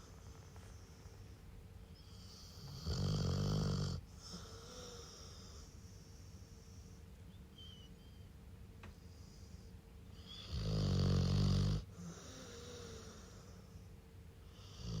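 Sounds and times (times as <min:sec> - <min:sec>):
dog snoring: 0:02.0 - 0:05.7, 0:10.2 - 0:13.5, 0:14.5 - 0:15.0.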